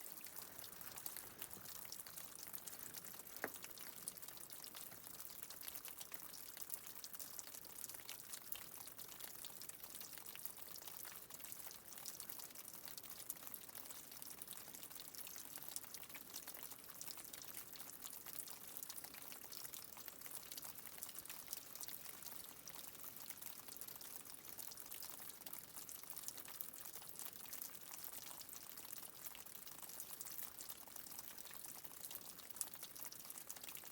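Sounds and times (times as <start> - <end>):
water trickling and splashing: 0.0 - 7.8.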